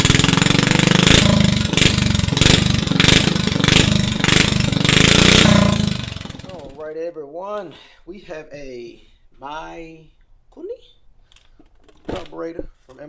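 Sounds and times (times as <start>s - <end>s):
kart engine revving loudly: 0.0s - 6.8s.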